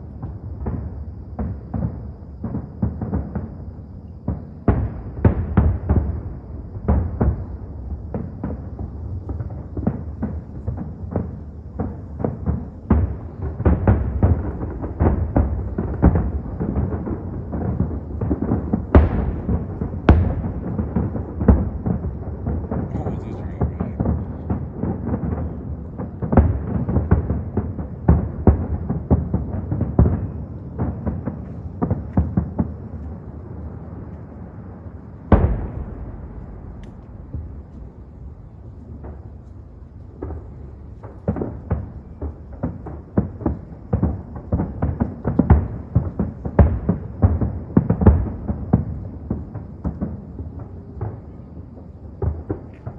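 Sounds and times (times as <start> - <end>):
fireworks booming: 0.0 - 52.9
rumble: 0.0 - 52.9
low rumble: 35.4 - 41.0.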